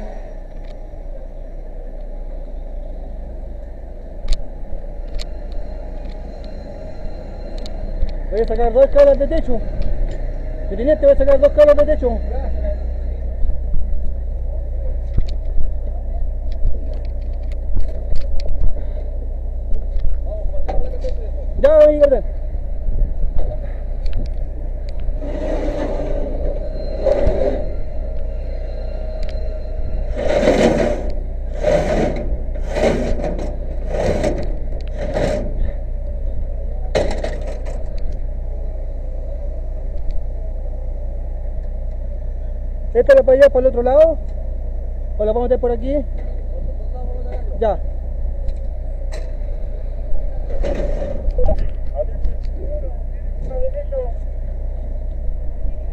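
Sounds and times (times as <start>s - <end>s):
fire engine engine rumbling: 0.0s - 55.9s
wooden ladder scraping: 25.2s - 27.8s, 30.1s - 35.8s.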